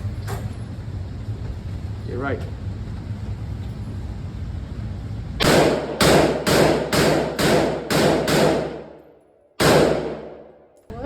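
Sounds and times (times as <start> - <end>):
gunshots: 5.4 - 9.0, 9.6 - 10.5.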